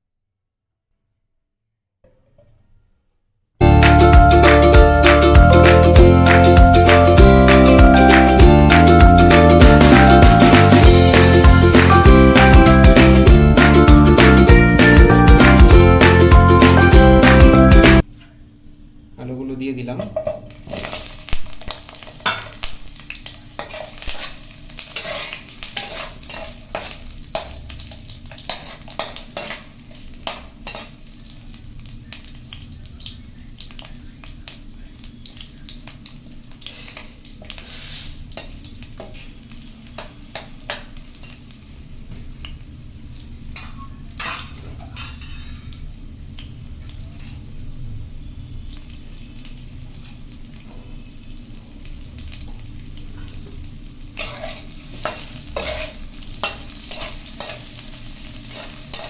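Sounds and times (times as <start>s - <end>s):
potatoes frying in oil: 20.4s - 59.0s.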